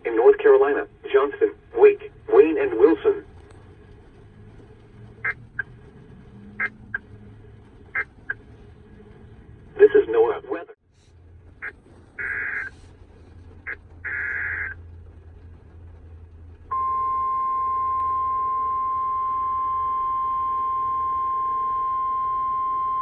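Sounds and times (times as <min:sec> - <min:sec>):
steady warning alarm tone: 0:16.7 - 0:23.0.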